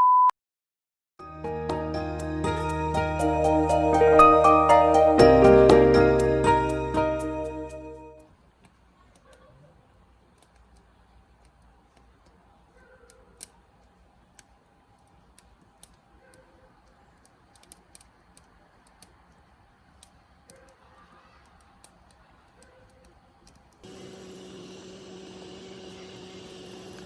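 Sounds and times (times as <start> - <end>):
faint irregular clicks: 8.2 - 23.8.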